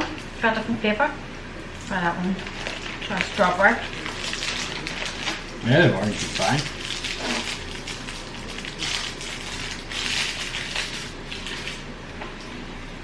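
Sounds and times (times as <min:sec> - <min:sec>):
plastic sweet wrapper crinkling: 0:01.8 - 0:11.9.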